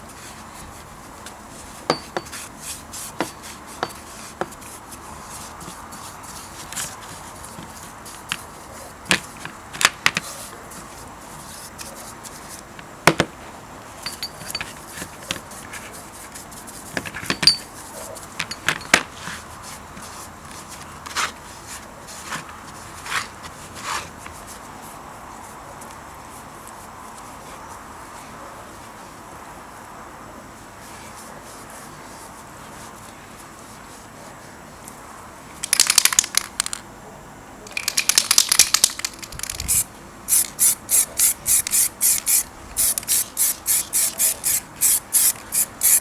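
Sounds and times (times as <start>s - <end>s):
metal tools clicking and knocking: 14.0s - 14.8s, 17.2s - 17.7s, 18.4s - 19.0s, 37.7s - 46.0s
steady low hiss: 37.0s - 46.0s.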